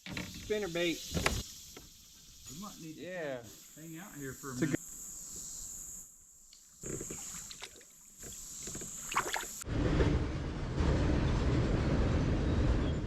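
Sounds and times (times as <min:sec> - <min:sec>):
insect drone: 0:00.0 - 0:09.6
rushing creek water: 0:07.0 - 0:09.6.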